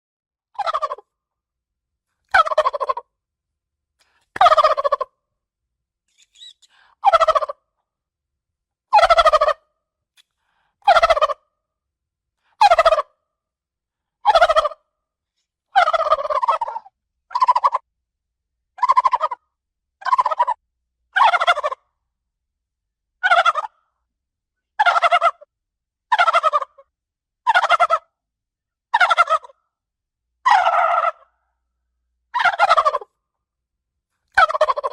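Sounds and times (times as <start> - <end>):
turkey gobbling: 0.6 - 1.0, 2.3 - 3.0, 4.4 - 5.1, 6.1 - 7.6, 9.0 - 9.6, 10.9 - 11.4, 12.6 - 13.1, 14.3 - 14.8, 15.8 - 17.8, 18.8 - 19.4, 20.0 - 20.6, 21.2 - 21.8, 23.2 - 23.8, 24.8 - 25.5, 26.1 - 26.8, 27.5 - 28.1, 28.9 - 29.6, 30.5 - 31.3, 32.4 - 33.2, 34.4 - 34.9.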